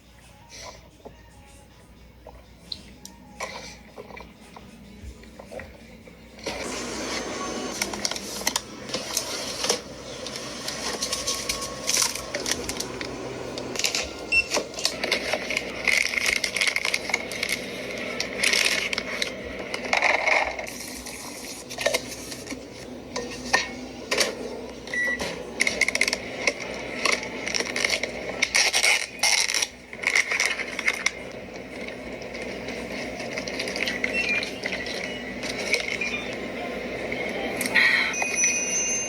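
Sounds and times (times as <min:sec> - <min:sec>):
food containers and utensils clinking: 0:06.4 - 0:36.1.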